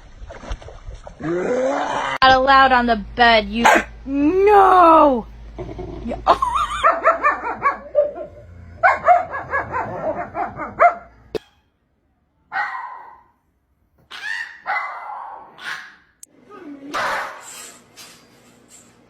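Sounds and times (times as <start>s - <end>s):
dog barking and yipping: 3.6s - 3.9s, 6.7s - 11.6s, 12.5s - 13.2s, 14.1s - 16.1s, 16.9s - 17.8s.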